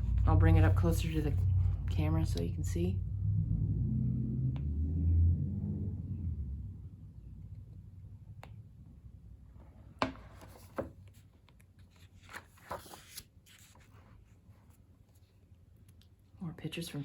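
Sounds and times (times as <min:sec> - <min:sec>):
pages rustling: 0:10.3 - 0:15.4.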